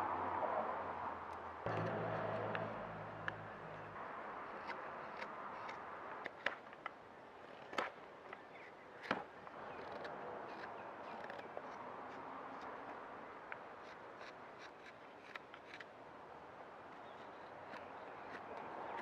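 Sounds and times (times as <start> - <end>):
carving tool cutting wood: 4.4 - 6.6, 9.0 - 13.0, 13.8 - 15.9, 16.9 - 19.0.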